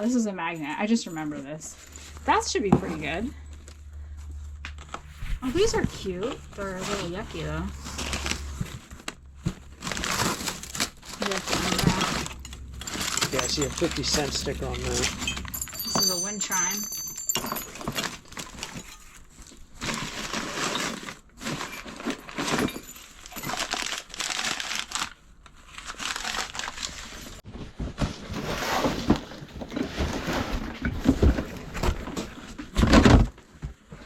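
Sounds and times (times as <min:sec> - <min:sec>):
wrapping material crinkling: 0:03.4 - 0:16.8, 0:17.8 - 0:22.4, 0:23.1 - 0:27.4.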